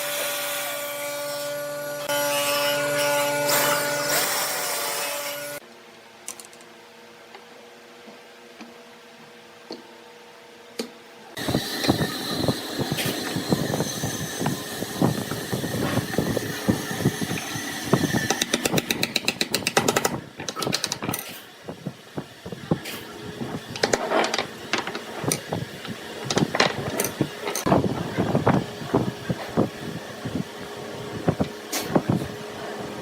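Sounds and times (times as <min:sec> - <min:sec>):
wood lathe running: 0:11.4 - 0:19.2.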